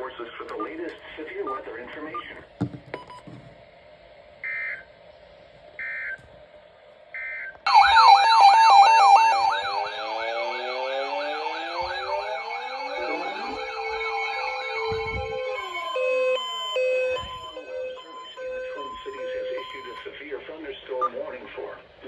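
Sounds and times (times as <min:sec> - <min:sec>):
alert data tone bursts: 0:07.7 - 0:20.1
wailing siren-like alert: 0:07.7 - 0:20.1.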